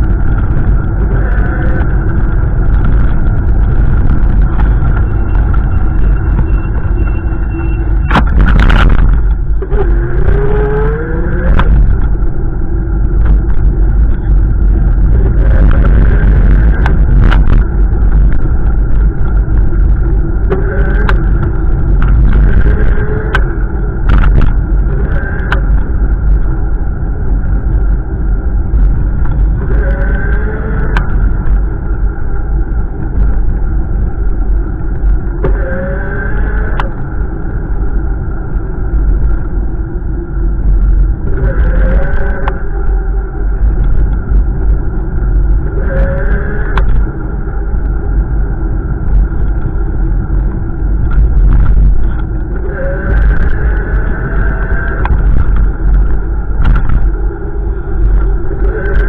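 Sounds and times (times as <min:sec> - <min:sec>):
wind buffeting microphone: 0:00.0 - 0:59.0.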